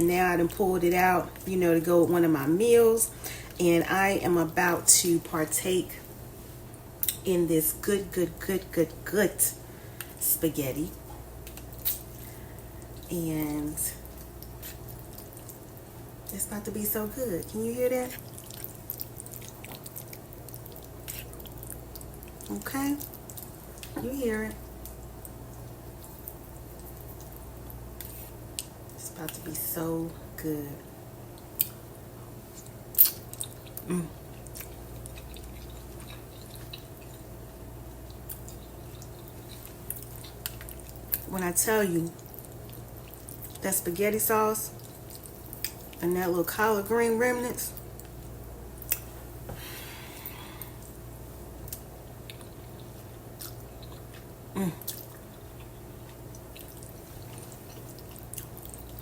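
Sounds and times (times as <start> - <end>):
wet chewing: 11.0 - 13.1, 14.0 - 15.9, 18.0 - 24.0, 32.4 - 41.4, 42.1 - 43.6, 44.7 - 46.0, 47.7 - 49.2, 51.6 - 59.0
wet mouth clicks: 51.7 - 55.7.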